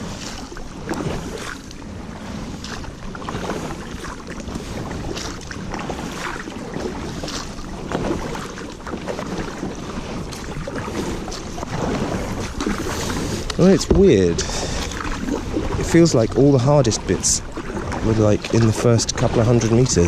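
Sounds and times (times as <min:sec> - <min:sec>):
paddle splashes and drips: 0:00.0 - 0:20.0
water rushing and splashing: 0:00.0 - 0:20.0.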